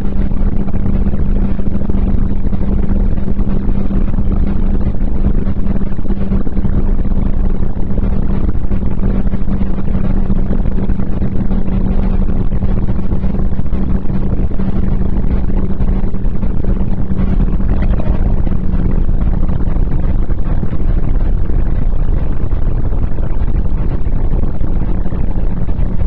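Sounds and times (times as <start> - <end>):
car engine droning: 0.0 - 26.0
road noise: 12.0 - 22.9.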